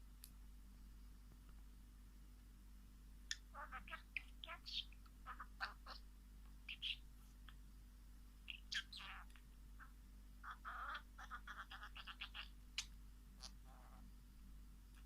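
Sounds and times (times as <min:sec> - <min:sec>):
faint wild bird calls: 0:03.2 - 0:15.0.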